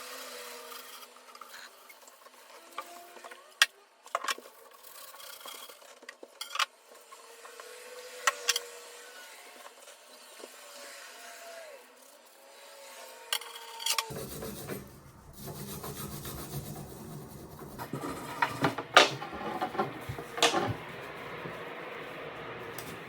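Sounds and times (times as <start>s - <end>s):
sharp metal scrapes: 12.4s - 23.0s
hand rubbing sword blade: 14.1s - 21.8s.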